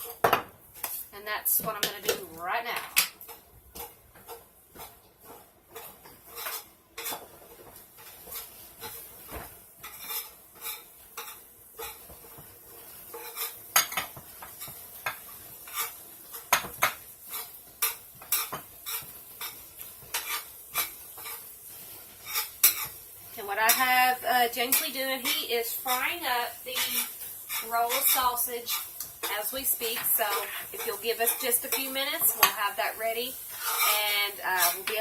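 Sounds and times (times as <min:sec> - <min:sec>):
sausage sizzling: 0:00.0 - 0:35.0
utensil scraping in a frying pan: 0:00.0 - 0:35.0.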